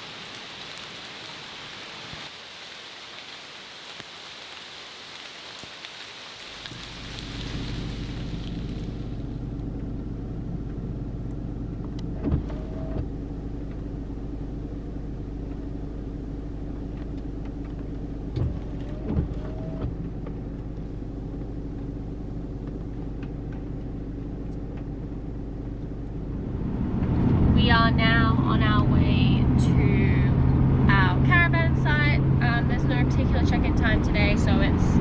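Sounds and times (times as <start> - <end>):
van engine drone: 6.5 - 35.0.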